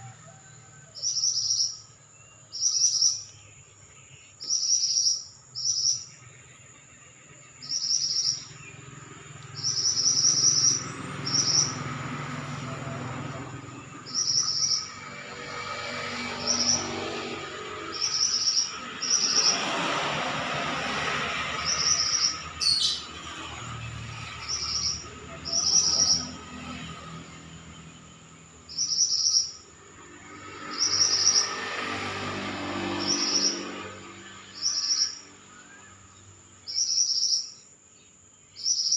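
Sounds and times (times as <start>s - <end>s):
bird singing high phrases: 1.0s - 11.8s, 12.4s - 15.0s, 17.9s - 19.7s, 21.6s - 23.2s, 24.4s - 26.4s, 28.7s - 29.7s, 34.4s - 37.7s, 38.4s - 38.9s.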